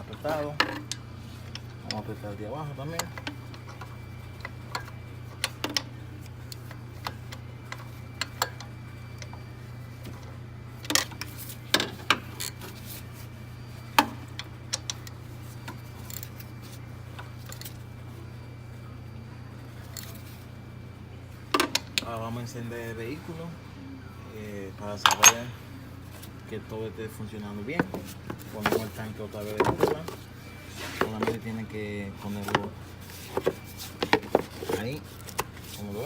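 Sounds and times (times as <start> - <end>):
steady low hum: 0.0 - 36.0
metal tools clicking and clinking: 25.0 - 25.5.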